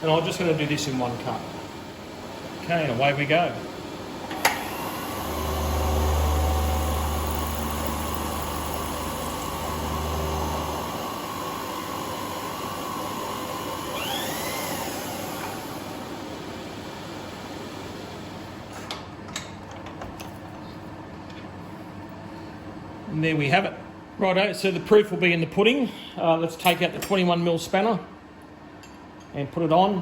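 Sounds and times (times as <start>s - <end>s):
milling machine spindle tone: 4.6s - 16.0s.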